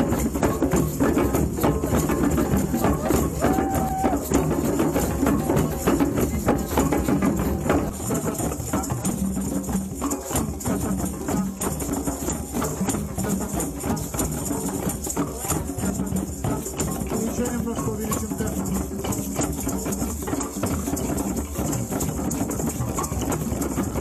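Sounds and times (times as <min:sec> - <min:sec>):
hand drums in fast rhythm: 0:00.0 - 0:24.0
tambourine jingling: 0:00.0 - 0:24.0.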